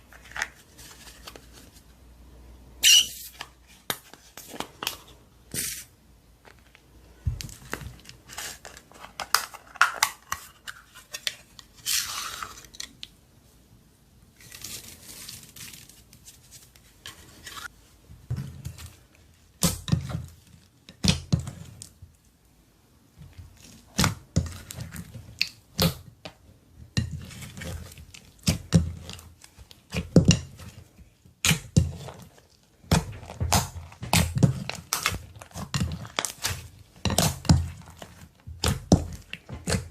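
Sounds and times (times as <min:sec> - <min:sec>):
slime popping and crackling: 0:31.4 - 0:39.9.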